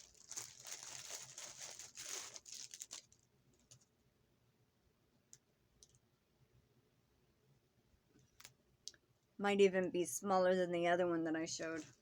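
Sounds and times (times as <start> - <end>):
packaging crinkling: 0.0 - 3.9.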